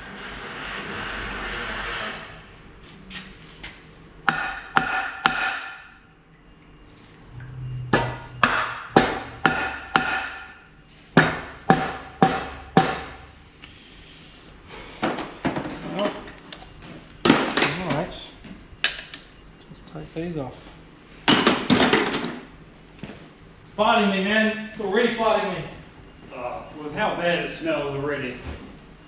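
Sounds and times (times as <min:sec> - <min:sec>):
hammer blows on metal: 0:07.5 - 0:13.2.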